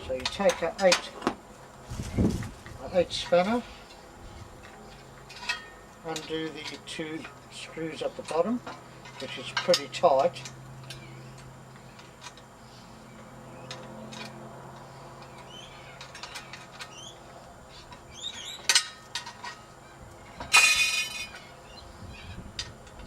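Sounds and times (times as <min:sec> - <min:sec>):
birds chirping: 0:00.0 - 0:23.0
loud bird call: 0:14.9 - 0:18.8.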